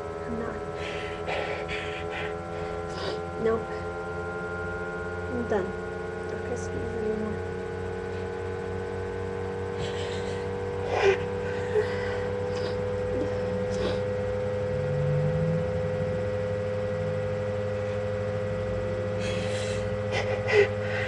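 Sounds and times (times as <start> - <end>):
steady low hum: 0.0 - 21.0
person breathing in: 0.7 - 3.4, 19.2 - 21.0.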